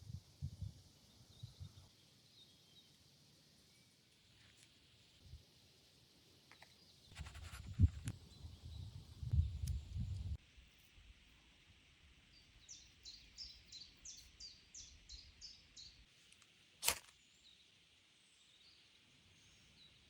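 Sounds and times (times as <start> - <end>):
faint bird song: 0.0 - 20.0
sharp click: 16.3 - 17.2.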